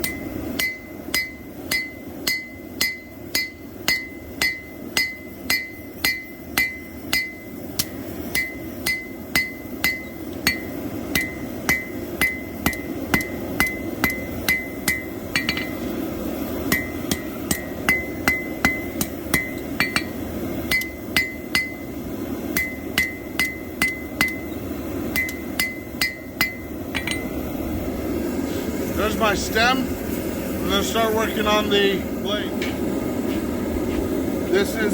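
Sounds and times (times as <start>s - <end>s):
hammer striking steel on anvil: 0.0s - 15.9s, 16.7s - 27.4s
low hum: 0.0s - 34.9s.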